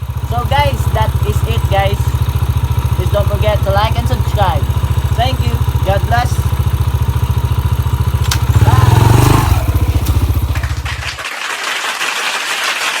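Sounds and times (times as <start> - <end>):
motorcycle engine idling: 0.0 - 11.2.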